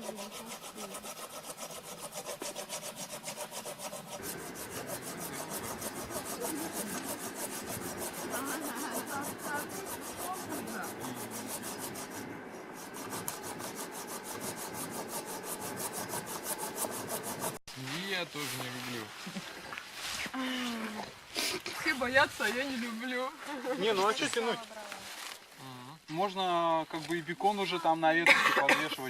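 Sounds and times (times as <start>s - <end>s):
hand saw cutting wood: 0.0s - 17.6s.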